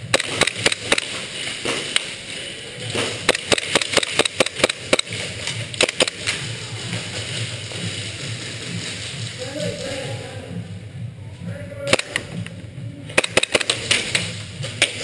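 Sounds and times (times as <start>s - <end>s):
airsoft gunshots: 0.0s - 2.2s, 2.9s - 6.5s, 11.8s - 12.4s, 13.1s - 15.0s.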